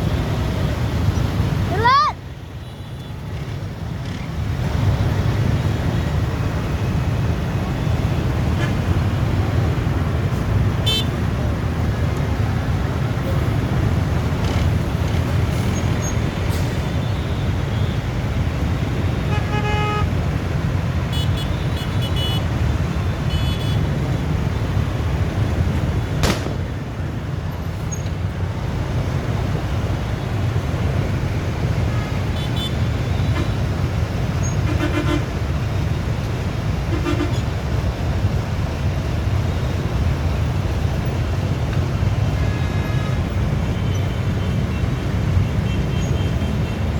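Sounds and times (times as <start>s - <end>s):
road traffic rumble: 0.0s - 46.9s
vehicle horn toots: 19.3s - 20.1s, 21.1s - 22.4s
sharp crack: 26.2s - 27.1s.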